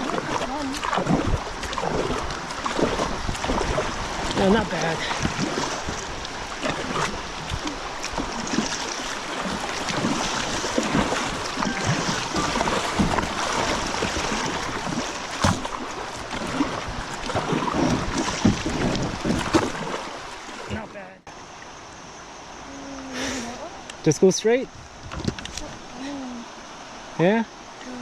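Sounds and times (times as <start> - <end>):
river current rushing: 0.0 - 28.0
sharp knocks on kayak: 9.9 - 14.8.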